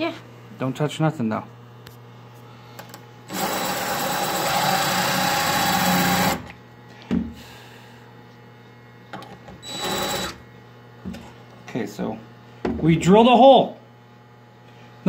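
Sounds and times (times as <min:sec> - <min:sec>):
impact driver drilling glass: 0:03.3 - 0:06.5, 0:09.7 - 0:10.4.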